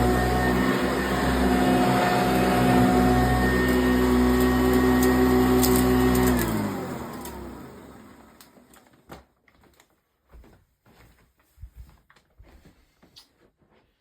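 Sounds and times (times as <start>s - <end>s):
upright vacuum cleaner running: 0.0s - 8.8s.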